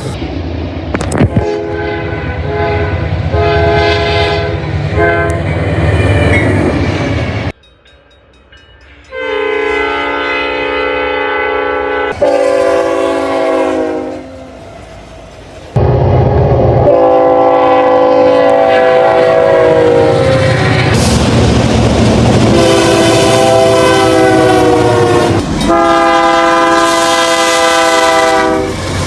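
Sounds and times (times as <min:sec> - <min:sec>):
low rumble of train: 0:00.0 - 0:29.0
long steady train horn: 0:01.4 - 0:05.5, 0:09.1 - 0:14.6, 0:15.8 - 0:21.0, 0:22.4 - 0:28.8
train horn blasts: 0:01.4 - 0:05.5, 0:09.1 - 0:14.5, 0:15.8 - 0:21.0, 0:22.4 - 0:28.8.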